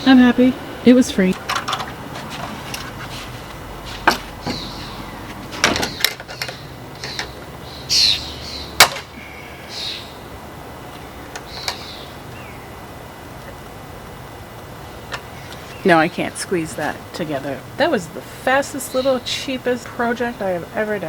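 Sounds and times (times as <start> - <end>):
high bird chirps: 4.5 - 5.2, 5.9 - 10.2.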